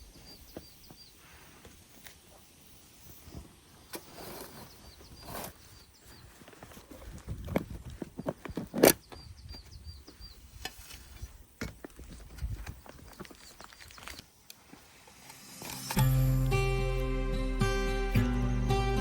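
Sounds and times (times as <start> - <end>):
acoustic guitar: 15.6 - 19.0.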